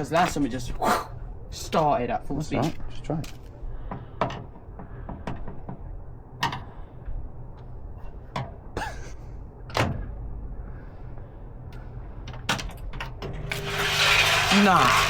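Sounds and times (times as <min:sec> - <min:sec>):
washing machine humming: 0:13.2 - 0:15.0.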